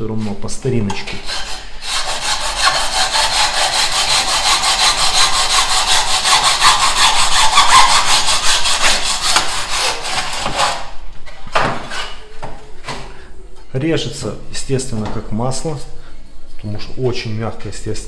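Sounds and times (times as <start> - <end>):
hand saw cutting tile: 1.0 - 10.9.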